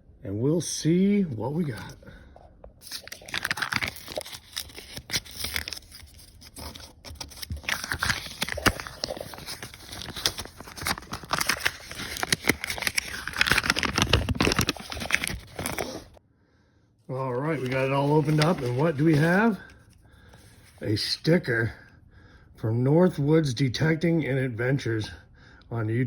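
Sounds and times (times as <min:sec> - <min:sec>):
paper tearing and crinkling: 0:02.8 - 0:16.2, 0:17.2 - 0:19.8.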